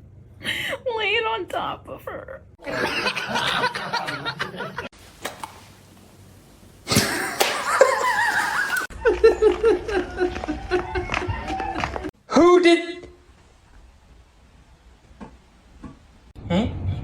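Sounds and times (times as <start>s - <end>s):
people laughing: 2.6s - 4.9s, 6.9s - 12.1s.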